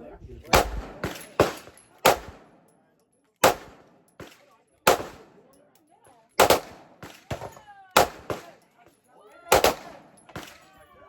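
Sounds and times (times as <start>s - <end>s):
gunshots with short echo: 0.5s - 2.6s, 3.4s - 5.4s, 6.4s - 8.6s, 9.5s - 10.6s.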